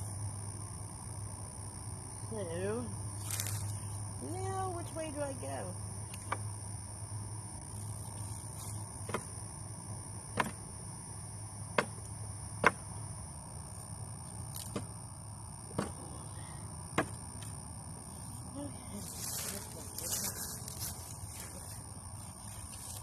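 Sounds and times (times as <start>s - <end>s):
hammer knocking on wood: 10.4s - 10.6s.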